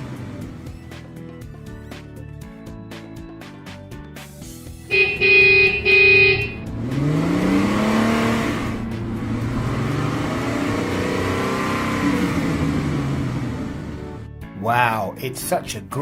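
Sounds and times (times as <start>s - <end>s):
car horn honking: 4.8s - 6.8s
vehicle engine revving: 4.9s - 14.3s.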